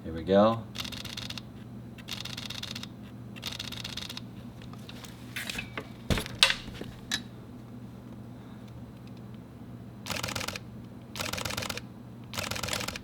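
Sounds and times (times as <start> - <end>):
camera shutter clicks: 0.8 - 4.3, 10.1 - 10.6, 11.2 - 13.0.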